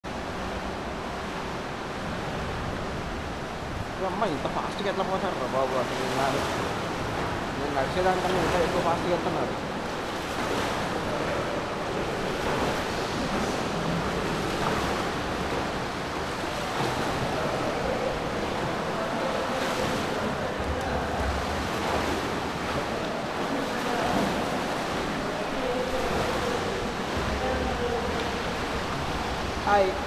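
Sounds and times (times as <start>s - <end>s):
swimmers splashing water: 3.4s - 30.0s.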